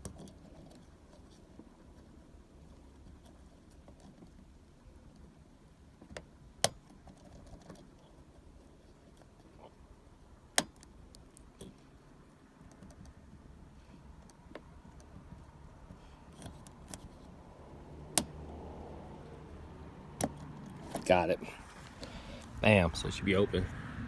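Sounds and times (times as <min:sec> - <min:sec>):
lock pick ticking and scraping: 0:14.2 - 0:17.4.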